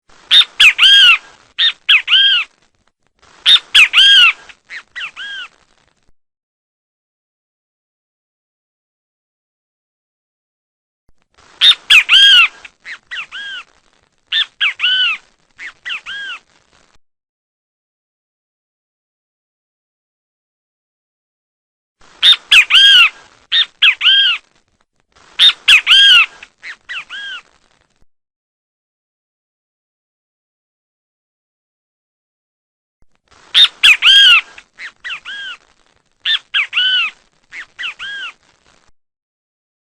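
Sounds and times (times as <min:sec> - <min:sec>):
bird harsh calls: 0:00.3 - 0:02.5, 0:03.4 - 0:05.6, 0:11.6 - 0:13.7, 0:14.3 - 0:16.4, 0:22.2 - 0:24.4, 0:25.4 - 0:27.5, 0:33.6 - 0:35.6, 0:36.2 - 0:38.4.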